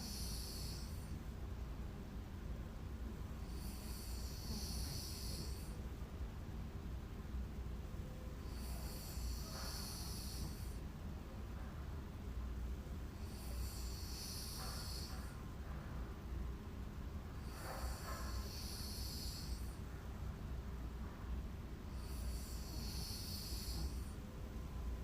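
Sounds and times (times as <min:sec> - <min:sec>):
woman snoring: 0:00.0 - 0:01.1, 0:03.4 - 0:05.8, 0:08.4 - 0:10.8, 0:13.2 - 0:15.2, 0:17.4 - 0:19.8, 0:21.9 - 0:24.1
low room rumble: 0:00.0 - 0:25.0.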